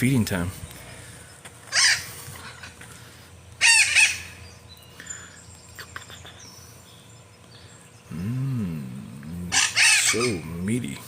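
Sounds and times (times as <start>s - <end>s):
bird calling: 0.7s - 11.0s.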